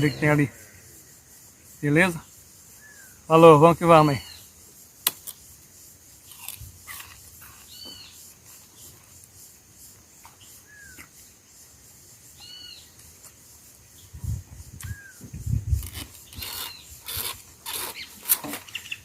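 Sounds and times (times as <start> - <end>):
bird calls: 0.0 - 4.6, 6.3 - 9.1, 10.2 - 11.3, 12.4 - 13.0, 14.8 - 15.4, 17.8 - 19.0
insect hiss: 0.0 - 19.0.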